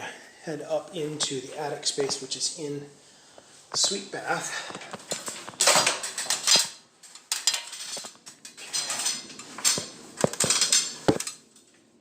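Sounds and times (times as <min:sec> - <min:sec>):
ladder clattering and rattling: 0:04.6 - 0:11.5.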